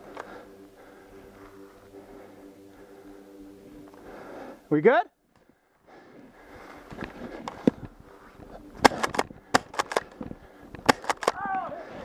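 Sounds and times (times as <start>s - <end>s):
footsteps crunching on dry brush: 6.6s - 9.4s
sharp cracks: 8.8s - 10.2s, 10.8s - 11.7s.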